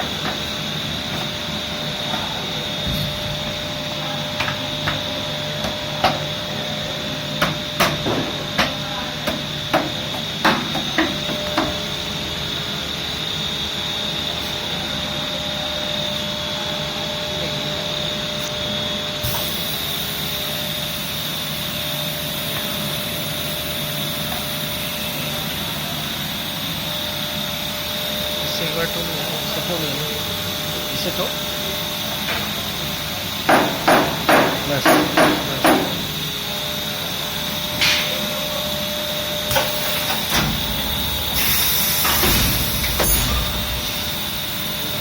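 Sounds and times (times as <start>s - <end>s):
welding machine hum and whine: 0.0s - 45.0s
sharp knocks and clanks: 7.4s - 11.8s, 33.4s - 36.1s
hiss: 39.5s - 44.6s.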